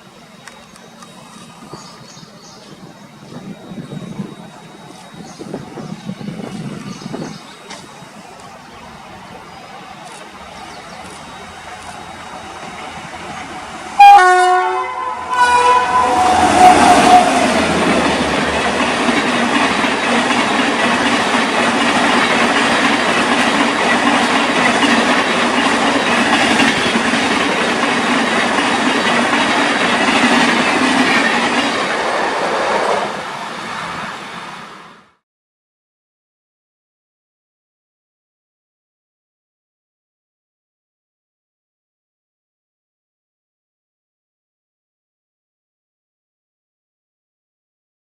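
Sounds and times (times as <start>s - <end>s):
train rumble and wheel clatter: 0.0s - 35.2s
train horn blast: 13.9s - 18.3s.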